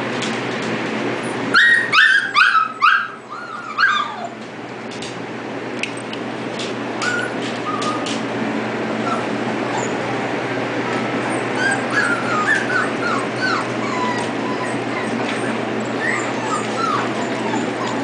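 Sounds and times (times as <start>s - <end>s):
puppies whimpering and yipping: 1.2s - 4.5s, 6.9s - 18.0s.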